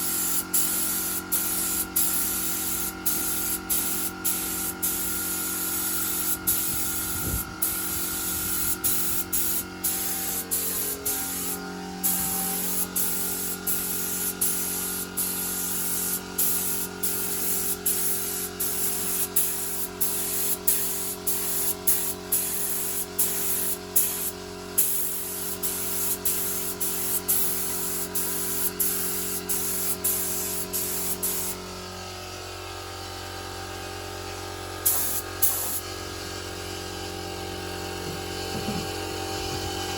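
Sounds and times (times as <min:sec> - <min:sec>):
spray gun hissing: 0:00.0 - 0:31.7, 0:34.8 - 0:35.9
steady motor hum: 0:00.0 - 0:39.9.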